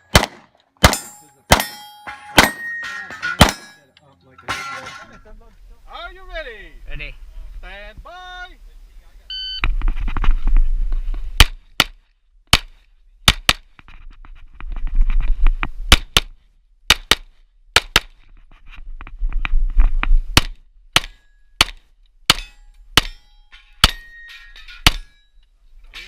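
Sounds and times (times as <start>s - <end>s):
handgun shots: 0.0s - 1.8s.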